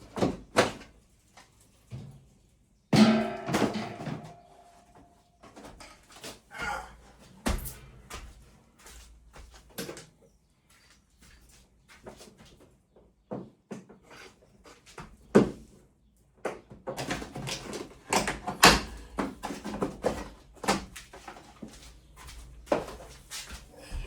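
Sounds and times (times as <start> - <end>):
sharp bang: 3.0 - 4.8
tools and parts clunking: 3.0 - 4.9.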